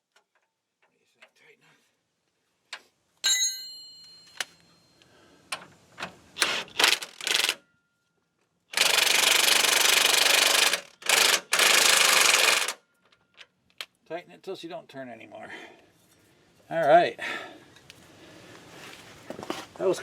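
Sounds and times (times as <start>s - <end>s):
metal part ringing after knock: 3.2s - 4.8s
impact wrench bursts: 6.4s - 7.6s, 8.7s - 12.8s.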